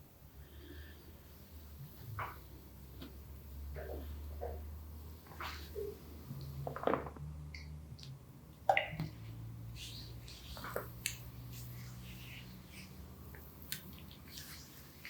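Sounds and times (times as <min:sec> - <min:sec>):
hands rubbing skin: 0:09.7 - 0:15.0.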